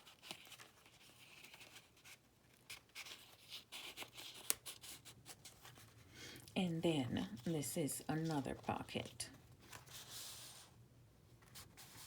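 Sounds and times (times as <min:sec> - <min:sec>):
paper rustling and ticking: 0:07.2 - 0:10.1.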